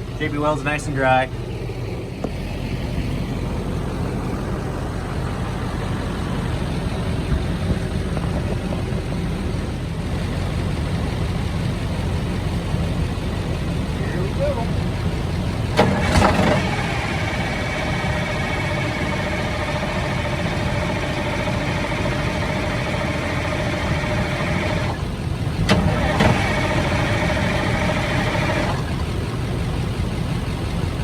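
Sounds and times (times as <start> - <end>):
engine cranking whine: 0.0 - 31.0
starter motor click: 15.6 - 25.0, 25.6 - 29.1.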